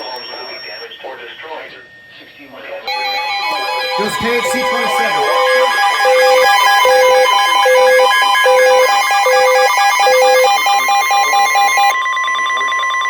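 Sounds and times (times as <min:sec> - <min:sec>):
steady high warning tone: 0:00.0 - 0:00.9, 0:02.9 - 0:12.0
slow low beep: 0:02.9 - 0:11.9
fast electronic alarm beeping: 0:02.9 - 0:12.0.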